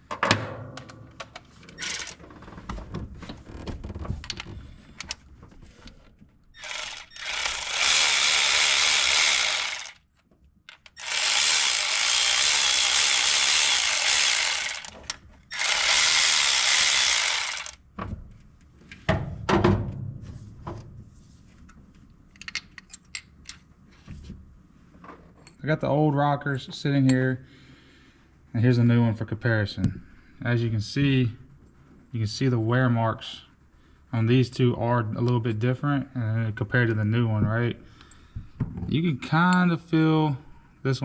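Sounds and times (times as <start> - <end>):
metal parts clicking and knocking: 0.8 - 2.2, 6.6 - 10.0, 10.6 - 17.8, 22.3 - 23.6
power ratchet running: 1.8 - 2.2, 6.6 - 10.0, 10.9 - 17.8.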